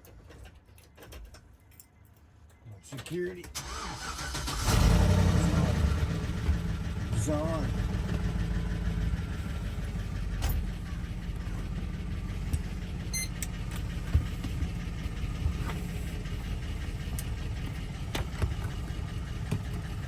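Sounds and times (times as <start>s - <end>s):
engine idling: 3.6s - 20.0s
high electronic beep: 13.1s - 13.3s.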